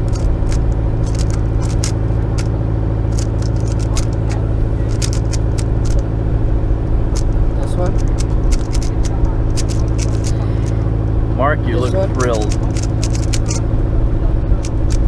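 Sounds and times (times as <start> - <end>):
sharp clicks and rattles: 0.0 - 6.2, 7.1 - 11.2, 11.9 - 13.7, 14.4 - 15.0
boat engine running: 0.0 - 15.0.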